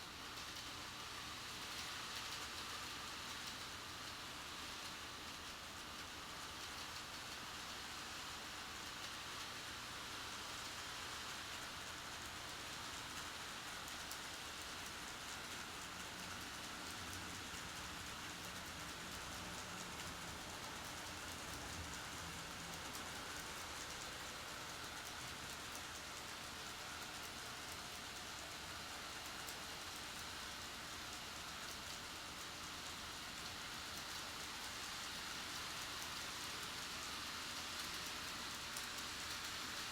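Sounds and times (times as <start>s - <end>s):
faint motor hum: 0.0s - 39.9s
model train running on track: 0.0s - 39.9s.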